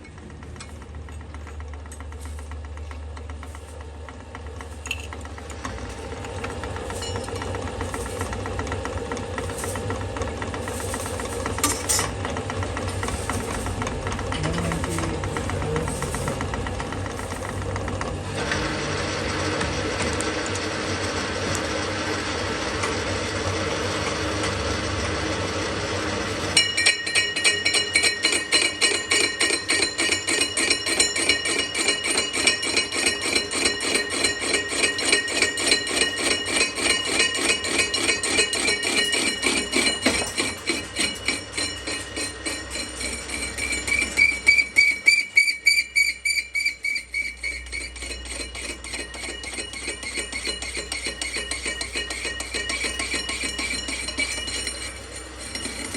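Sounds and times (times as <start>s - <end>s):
machine noise: 0.0s - 55.9s
hammer striking ringing steel: 6.9s - 8.3s, 10.7s - 12.2s, 26.5s - 55.9s.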